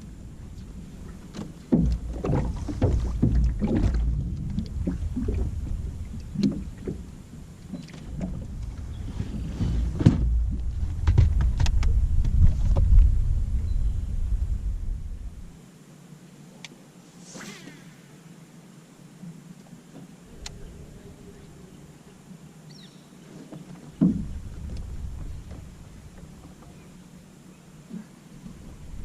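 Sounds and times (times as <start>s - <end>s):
boat knocks and bumps: 1.1s - 7.1s, 7.7s - 13.2s, 23.5s - 26.8s
low rumble: 1.8s - 7.5s, 8.1s - 15.6s, 24.0s - 26.2s.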